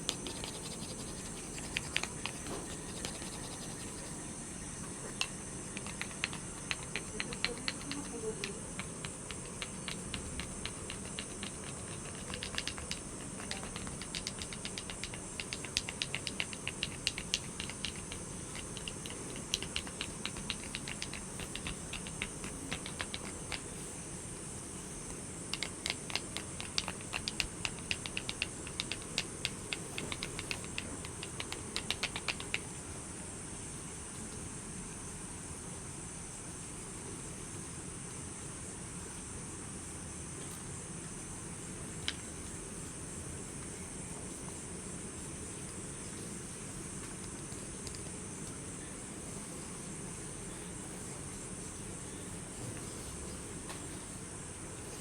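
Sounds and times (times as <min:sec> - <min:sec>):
rapid light clicking taps: 0:00.0 - 0:23.8, 0:25.1 - 0:32.8, 0:47.0 - 0:48.6
light rain hiss: 0:00.0 - 0:55.0.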